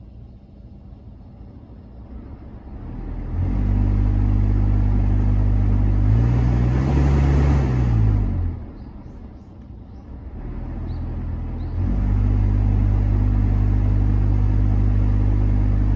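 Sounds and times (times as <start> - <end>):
blower fan droning hum: 11.6 - 15.9.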